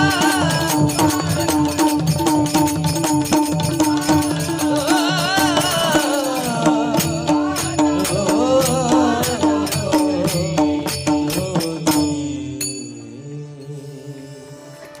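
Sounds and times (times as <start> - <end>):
quick percussion strikes: 0.0 - 13.1
devotional song melody: 0.0 - 15.0.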